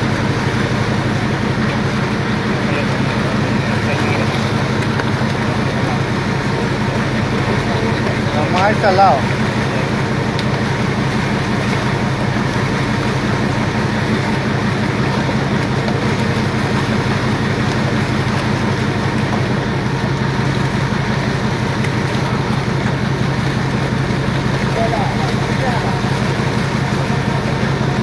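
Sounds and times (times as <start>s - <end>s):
boat engine droning: 0.0s - 28.0s.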